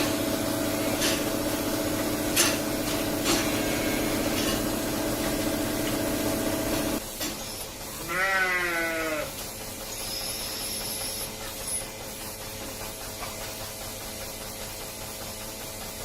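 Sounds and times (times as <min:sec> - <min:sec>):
calf bleating: 0:08.0 - 0:09.4.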